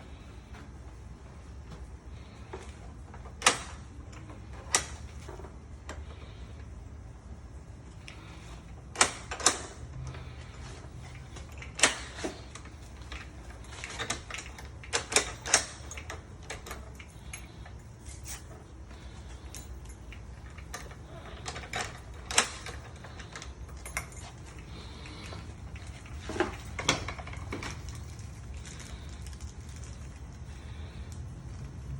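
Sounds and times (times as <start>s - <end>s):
metallic clicks of lock hardware: 3.3s - 5.3s, 8.9s - 10.0s, 11.1s - 30.0s.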